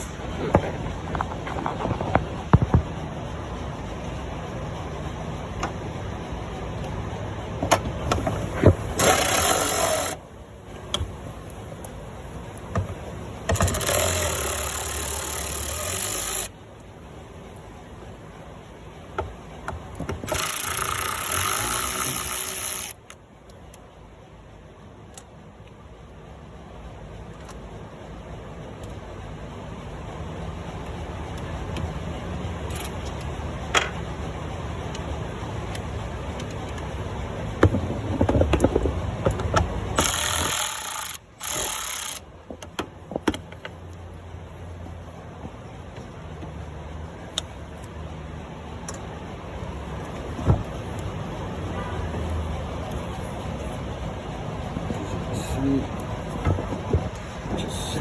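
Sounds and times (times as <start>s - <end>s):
power tool running: 8.4s - 10.2s, 13.5s - 16.5s, 20.3s - 23.0s, 40.0s - 42.2s
hand tools clicking: 9.0s - 10.2s, 13.5s - 16.5s, 40.0s - 42.2s
tools clicking and knocking: 12.6s - 16.5s, 19.2s - 23.8s, 37.6s - 44.0s.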